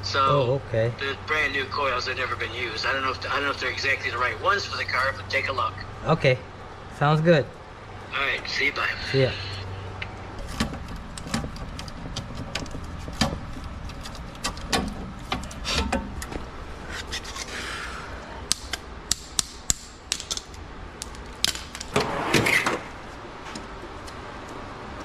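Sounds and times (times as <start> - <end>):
hand tools and metal clatter: 10.4 - 17.5.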